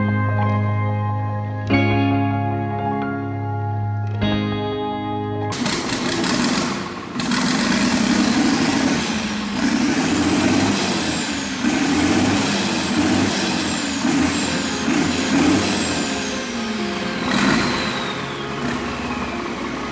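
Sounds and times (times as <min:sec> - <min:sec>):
tractor diesel engine revving: 0:05.5 - 0:19.9
turbo whistle: 0:14.9 - 0:19.9.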